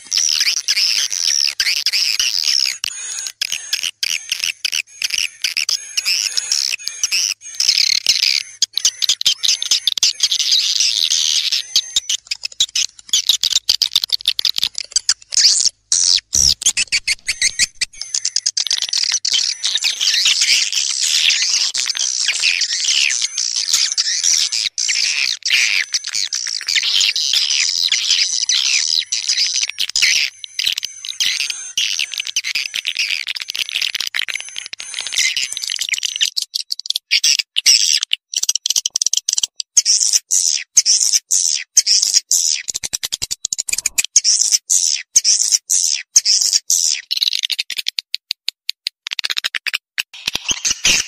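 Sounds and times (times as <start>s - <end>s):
swiftlets twittering: 2.9s - 35.9s.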